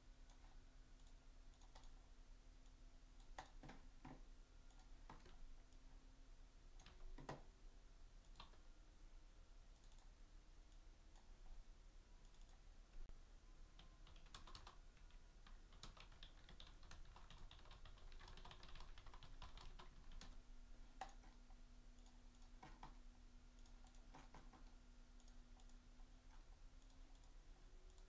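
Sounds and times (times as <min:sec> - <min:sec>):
low steady hum: 0:00.0 - 0:28.0
typing on computer keyboard: 0:00.3 - 0:02.0, 0:03.2 - 0:05.4, 0:06.8 - 0:07.5, 0:08.2 - 0:08.6, 0:09.8 - 0:10.1, 0:12.2 - 0:12.6, 0:13.8 - 0:21.4, 0:22.0 - 0:23.0, 0:23.6 - 0:28.0.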